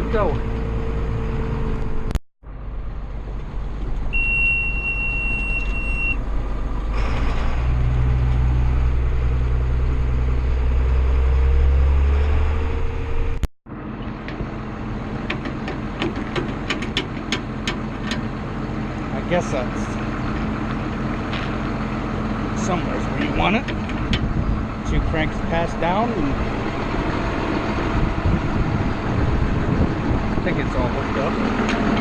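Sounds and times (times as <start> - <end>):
tractor engine rumbling: 0.0 - 32.0
steady high beep: 4.1 - 6.2.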